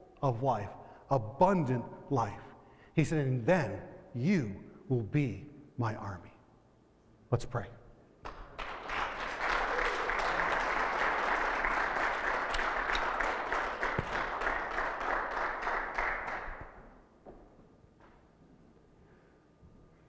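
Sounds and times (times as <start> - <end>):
crowd applauding: 8.3 - 16.8.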